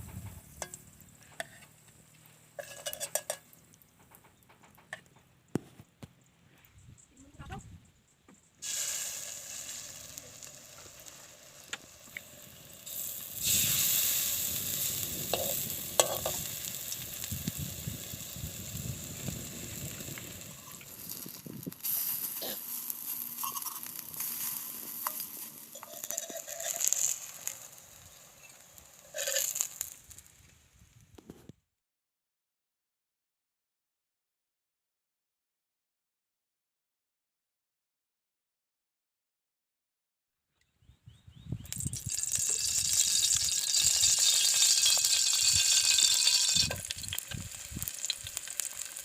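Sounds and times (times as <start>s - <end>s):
batter sizzling in hot oil: 0.0s - 3.8s, 8.6s - 30.4s, 41.7s - 49.0s.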